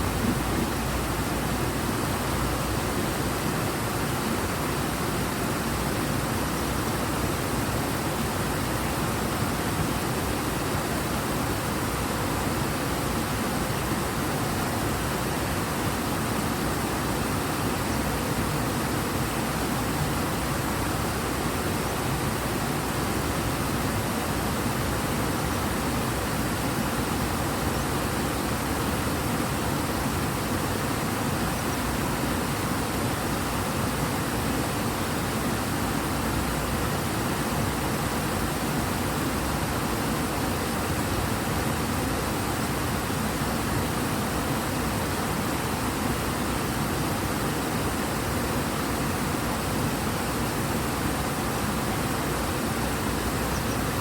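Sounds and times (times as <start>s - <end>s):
river water rushing: 0.0s - 54.0s.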